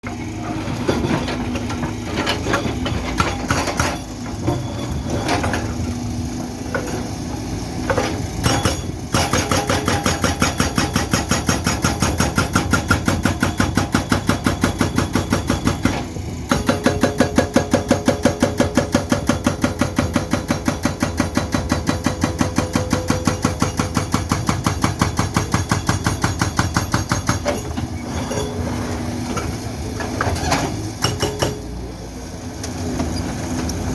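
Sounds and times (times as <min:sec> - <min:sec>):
excavator engine running: 0:00.0 - 0:33.9
hydraulic breaker hammering concrete: 0:02.7 - 0:04.7, 0:07.8 - 0:27.8, 0:30.9 - 0:31.8.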